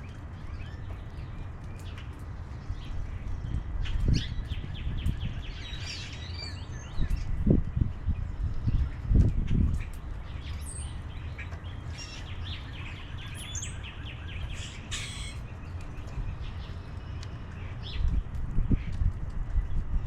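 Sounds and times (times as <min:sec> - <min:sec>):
small birds chirping: 0:00.0 - 0:20.0.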